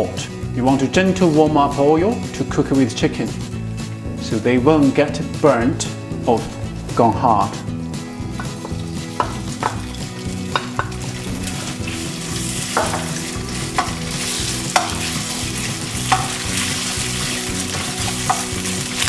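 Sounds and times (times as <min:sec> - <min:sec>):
utensil scraping a wok: 0:06.4 - 0:19.0
meat frying in oil: 0:08.0 - 0:19.0.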